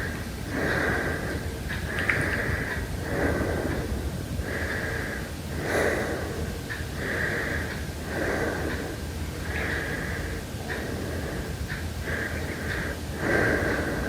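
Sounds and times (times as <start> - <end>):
heavy breathing: 0.0 - 14.0.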